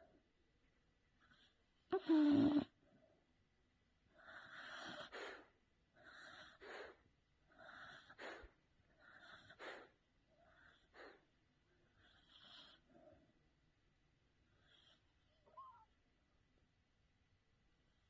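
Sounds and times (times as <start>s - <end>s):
dog snoring: 1.2s - 2.8s, 4.2s - 5.4s, 6.0s - 9.9s, 11.9s - 12.9s, 14.6s - 15.4s.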